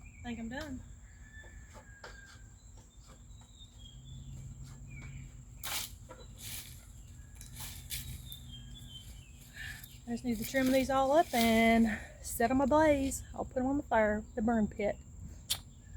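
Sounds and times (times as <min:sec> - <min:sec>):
bird chirps: 0:00.0 - 0:12.0.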